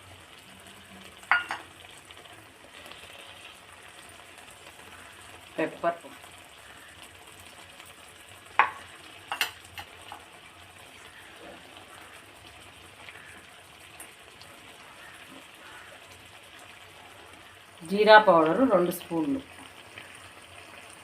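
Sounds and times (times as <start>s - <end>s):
chicken sizzling in a pan: 0.0s - 21.0s
spoon clinking against pan: 1.3s - 1.7s, 8.6s - 9.9s.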